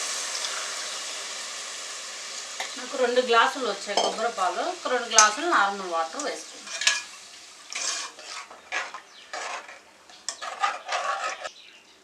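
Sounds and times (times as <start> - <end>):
spoon scraping a pot: 6.6 - 11.5.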